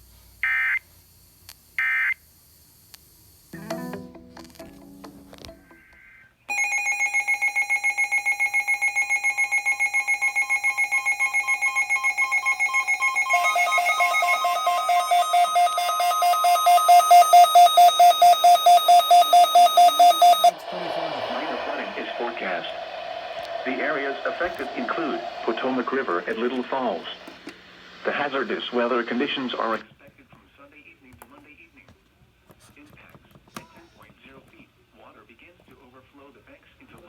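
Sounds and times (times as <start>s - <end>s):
rapid pulsing electronic beep: 7.2s - 20.6s.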